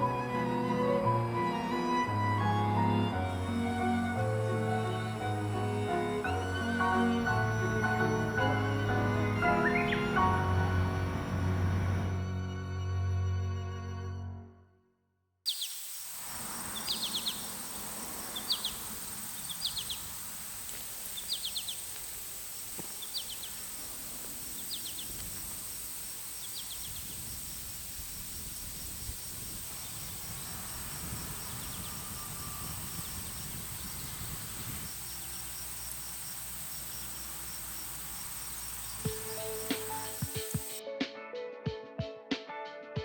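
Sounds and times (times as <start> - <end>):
bird chirping: 0.0 - 12.1, 15.5 - 40.8
low background rush: 0.0 - 12.2.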